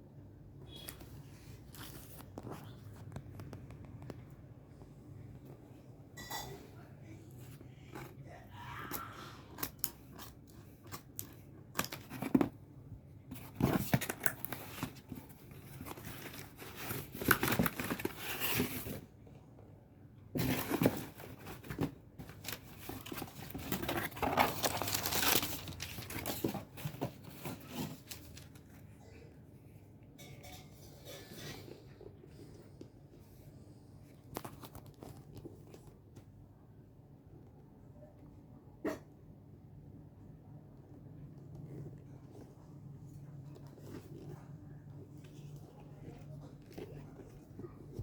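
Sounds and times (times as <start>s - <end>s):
packaging tearing and rustling: 13.4s - 19.0s, 20.4s - 28.6s.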